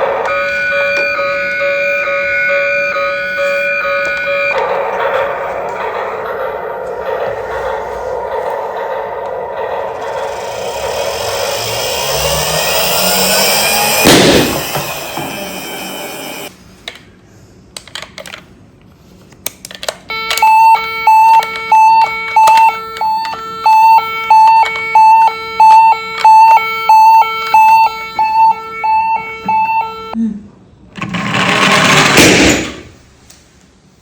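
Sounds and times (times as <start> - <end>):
toy siren two-tone pattern: 0.0 - 4.6, 9.6 - 16.5, 20.1 - 30.2
noisy rising tones: 0.0 - 16.5, 20.4 - 30.2
sharp bang: 10.0 - 16.5.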